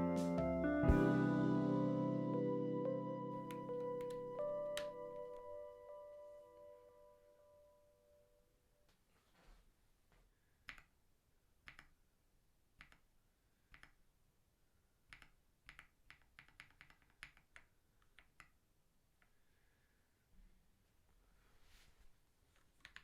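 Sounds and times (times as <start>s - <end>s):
mechanical keyboard keys clacking: 3.5s - 5.4s, 22.8s - 23.0s.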